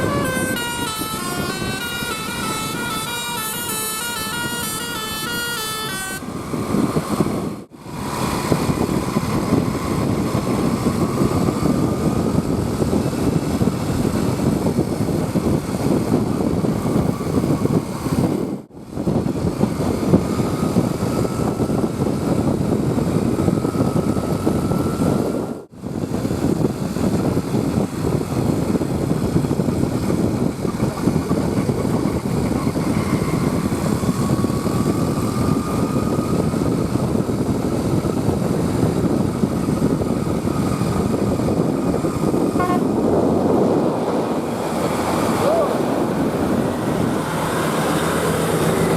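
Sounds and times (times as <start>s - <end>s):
rising whine: 0.0s - 18.6s
bus engines labouring uphill: 0.0s - 48.9s.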